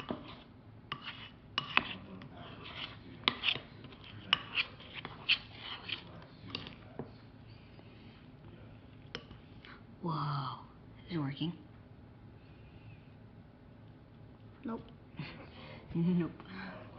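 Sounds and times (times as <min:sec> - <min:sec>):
slime being stirred in a bowl: 0:00.0 - 0:09.6.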